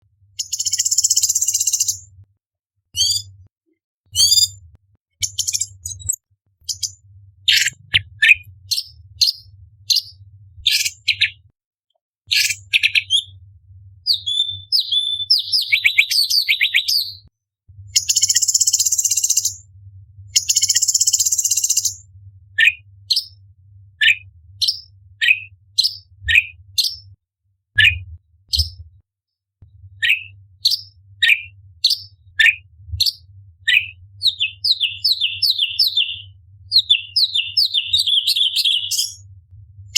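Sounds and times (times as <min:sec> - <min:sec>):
bird singing whistled notes: 0:00.4 - 0:02.0, 0:03.0 - 0:03.3, 0:04.2 - 0:04.6, 0:05.2 - 0:11.4, 0:14.1 - 0:17.3, 0:18.0 - 0:19.6, 0:20.4 - 0:22.0, 0:30.0 - 0:39.2.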